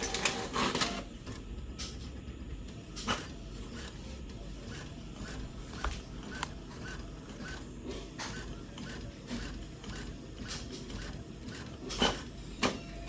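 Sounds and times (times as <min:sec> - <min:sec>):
printer clicks: 0:00.0 - 0:12.9
printer chirps: 0:00.0 - 0:13.0
printer mechanism running: 0:00.0 - 0:13.0.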